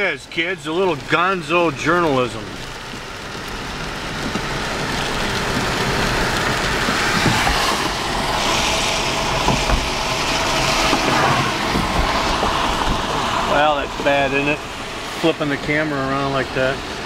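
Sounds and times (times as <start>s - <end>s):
rain: 0.0s - 17.0s
tyre and road noise: 0.0s - 17.0s.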